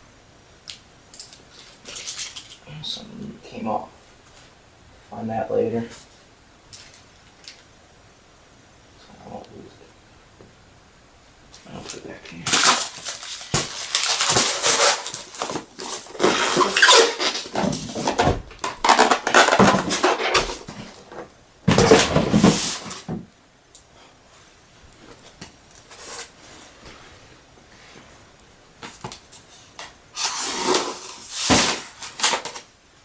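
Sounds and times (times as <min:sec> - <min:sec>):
packaging crinkling and rustling: 0:01.2 - 0:02.6, 0:11.7 - 0:23.2, 0:28.8 - 0:32.7.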